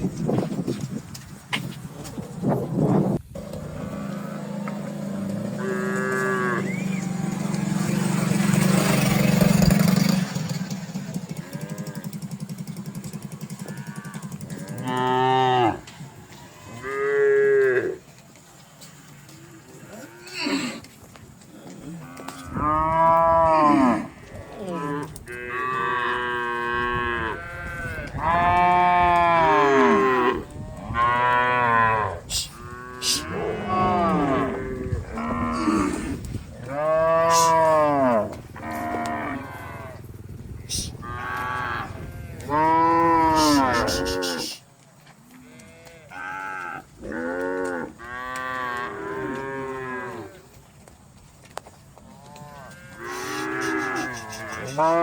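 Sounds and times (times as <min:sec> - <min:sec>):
cattle mooing: 0:03.4 - 0:09.6, 0:11.3 - 0:12.2, 0:13.5 - 0:15.9, 0:21.7 - 0:40.1, 0:40.7 - 0:44.6, 0:45.5 - 0:50.4, 0:52.2 - 0:55.0.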